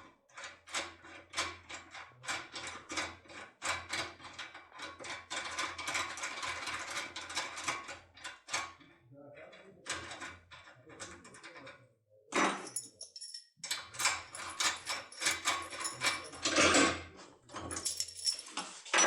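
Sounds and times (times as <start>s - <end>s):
lockpick metallic clicks and rattling: 12.5s - 16.6s.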